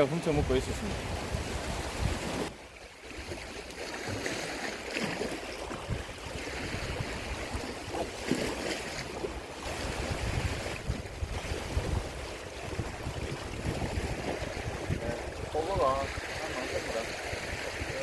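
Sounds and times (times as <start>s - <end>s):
wind buffeting microphone: 0.0s - 2.5s, 5.6s - 8.3s, 9.0s - 18.0s
waves lapping against rocks: 0.0s - 18.0s.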